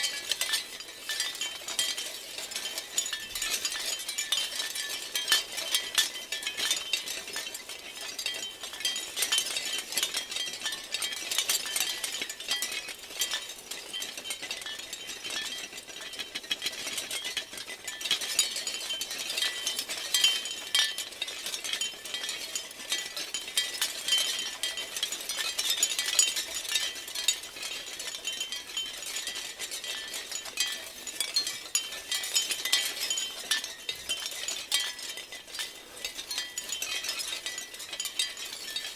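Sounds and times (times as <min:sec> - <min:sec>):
shell wind chimes clinking: 0:00.0 - 0:38.9.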